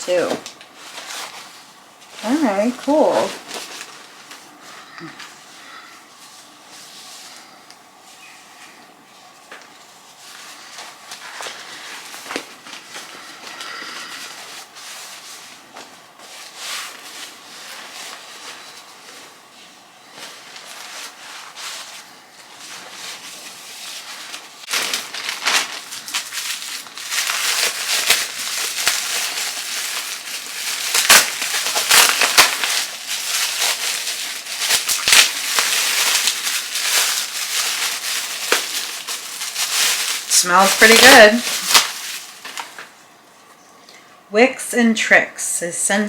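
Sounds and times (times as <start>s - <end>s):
packaging crinkling: 0.0s - 4.4s, 20.1s - 43.0s.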